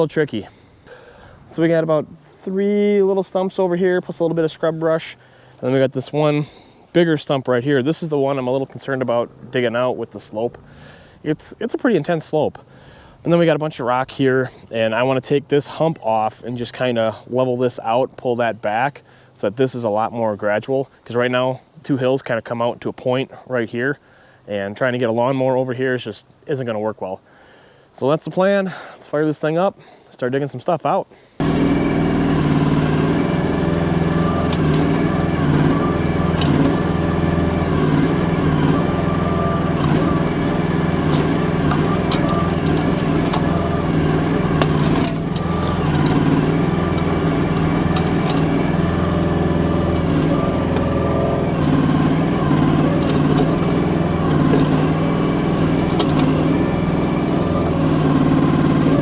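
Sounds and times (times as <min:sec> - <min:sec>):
excavator engine running: 0:31.4 - 0:59.0.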